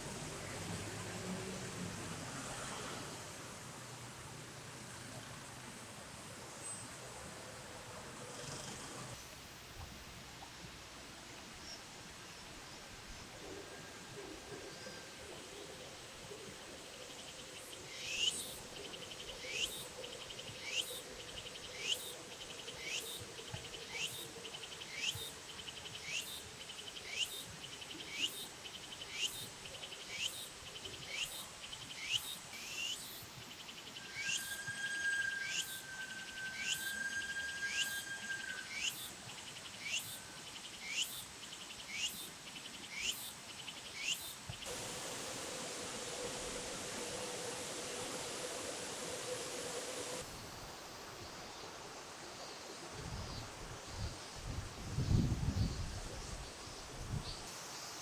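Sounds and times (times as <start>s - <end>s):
insect calling over a buzz: 32.0s - 41.2s
steady high tone: 34.0s - 38.9s.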